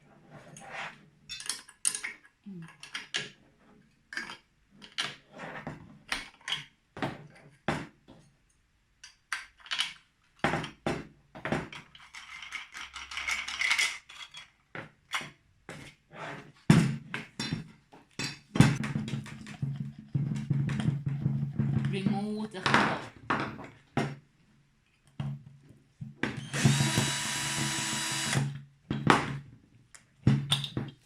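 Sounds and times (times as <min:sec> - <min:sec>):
metal and plastic parts clinking: 0:01.3 - 0:03.4, 0:11.7 - 0:15.3.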